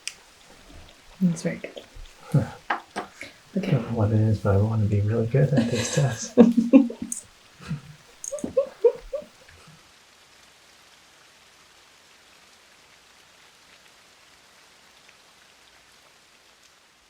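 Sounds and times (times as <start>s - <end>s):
light rain drop taps: 0.0s - 9.6s
faint steady rainfall: 0.0s - 17.0s.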